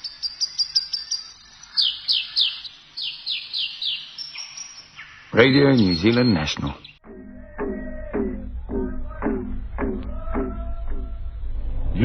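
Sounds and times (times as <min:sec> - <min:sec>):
high bird chirps: 0:00.0 - 0:07.0.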